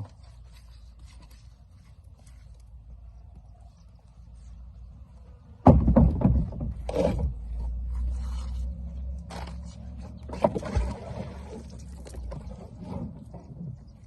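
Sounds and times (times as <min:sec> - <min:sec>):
knocks: 0:05.6 - 0:06.8.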